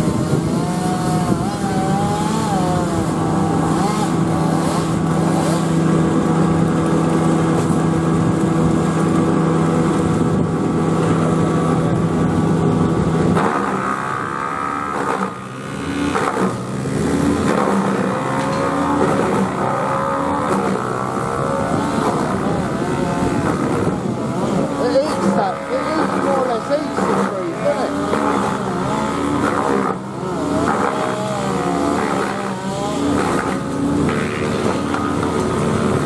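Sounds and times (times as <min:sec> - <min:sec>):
petrol engine running: 0:15.4 - 0:36.0.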